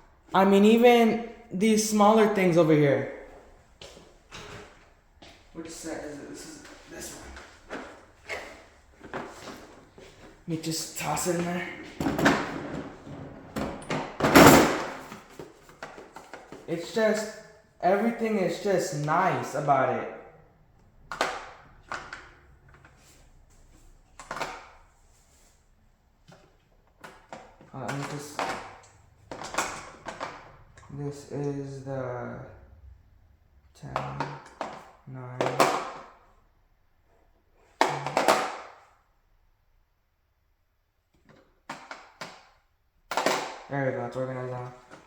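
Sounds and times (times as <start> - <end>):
metal tools clacking into case: 13.8 - 15.1.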